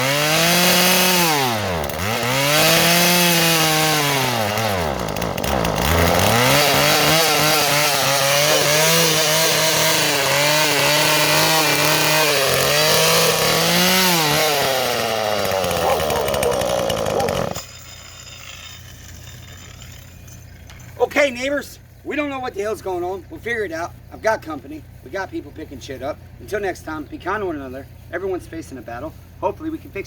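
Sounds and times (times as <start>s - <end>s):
chainsaw running at high revs: 0.0s - 20.7s.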